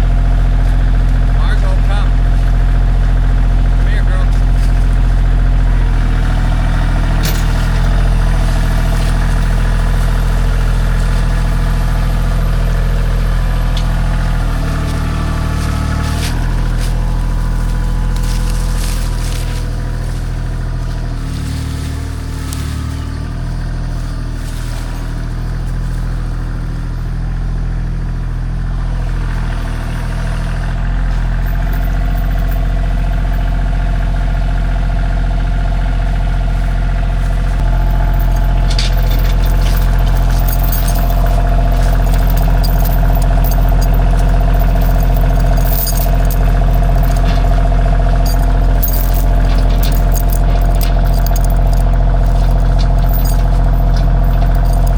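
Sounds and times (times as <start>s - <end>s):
vehicle engine running: 0.0s - 54.9s.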